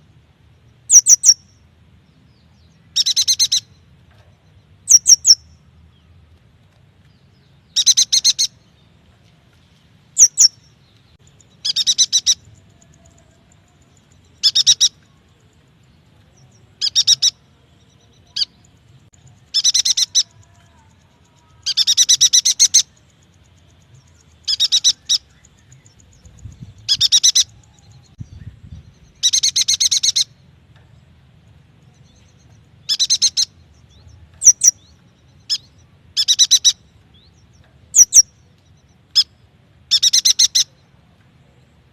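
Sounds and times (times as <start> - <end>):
rapid high chattering birdsong: 0.0 - 6.2, 6.8 - 41.9
sharp sweeping bird calls: 0.8 - 1.6, 2.9 - 3.8, 4.8 - 5.5, 7.7 - 8.6, 10.2 - 12.8, 14.3 - 15.0, 16.8 - 17.5, 24.2 - 30.4, 32.1 - 36.9, 37.5 - 40.8.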